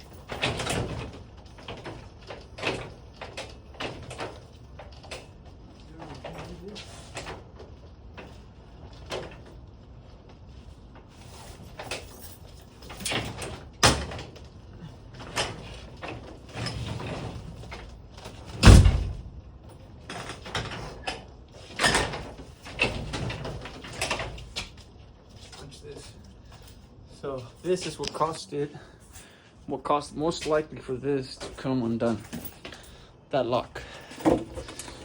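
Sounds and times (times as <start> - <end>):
garage door knocks and clatters: 0.0 - 6.6, 12.7 - 14.6, 15.2 - 19.4.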